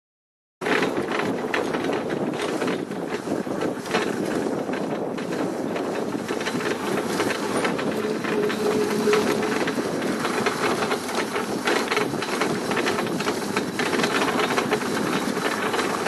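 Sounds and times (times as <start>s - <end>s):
cart rattling over rough ground: 0.6s - 16.0s.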